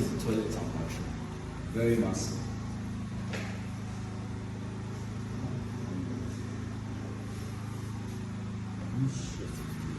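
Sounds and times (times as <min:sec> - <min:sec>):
steady low hum: 0:00.0 - 0:09.9.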